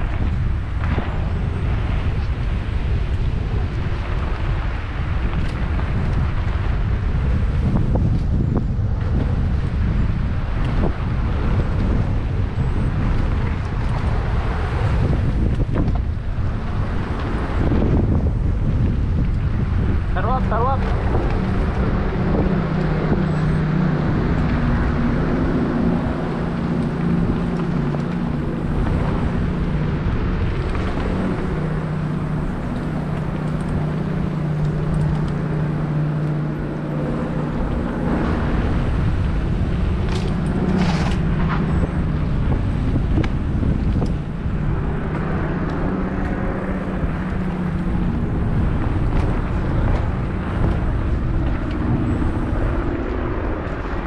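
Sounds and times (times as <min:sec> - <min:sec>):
bike tyre noise on dirt: 0:00.0 - 0:54.0
wind on microphone: 0:00.0 - 0:54.0
low buzz: 0:20.7 - 0:53.8.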